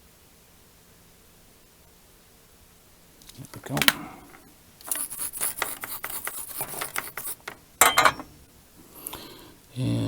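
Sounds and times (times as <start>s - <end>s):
scratchy scraping of wires: 4.8s - 8.2s.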